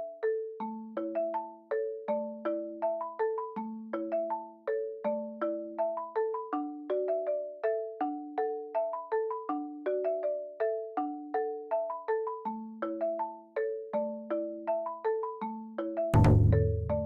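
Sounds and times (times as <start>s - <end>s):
marimba-like melody: 0.0s - 17.0s.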